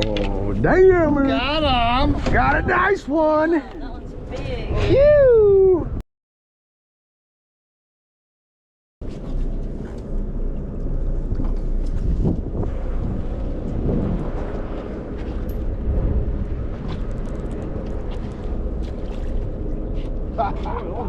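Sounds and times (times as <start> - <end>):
wind buffeting microphone: 0.2 - 6.0, 11.4 - 21.0
boat engine rumbling: 9.0 - 21.0.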